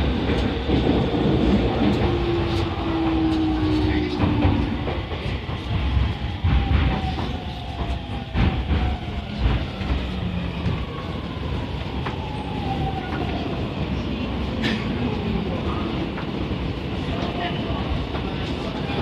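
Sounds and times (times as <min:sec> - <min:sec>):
train rumble: 0:00.0 - 0:19.0.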